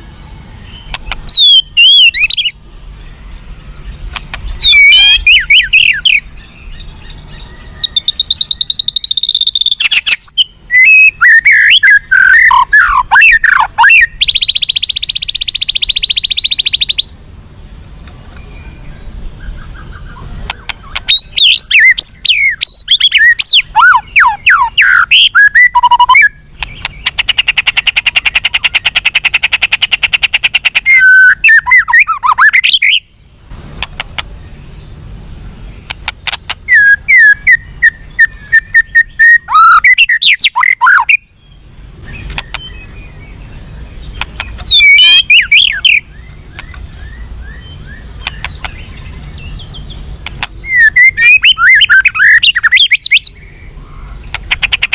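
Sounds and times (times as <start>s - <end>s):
buzzy bird trill: 0.0s - 17.2s, 18.4s - 33.2s, 34.4s - 54.9s
bird singing whistled phrases: 0.6s - 17.1s, 18.4s - 26.4s, 30.8s - 33.1s, 36.7s - 41.4s, 44.1s - 53.8s.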